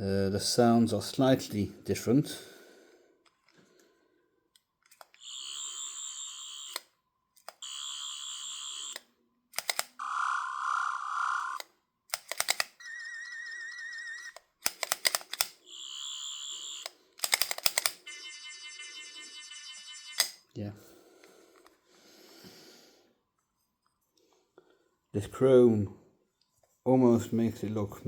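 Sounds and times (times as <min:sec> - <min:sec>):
toy electronic buzzing: 0:05.2 - 0:06.9, 0:07.5 - 0:09.0, 0:10.0 - 0:11.7, 0:12.8 - 0:14.4, 0:15.6 - 0:17.0
sharp clicks: 0:09.5 - 0:10.0, 0:11.5 - 0:12.8, 0:14.3 - 0:15.6, 0:16.8 - 0:18.0.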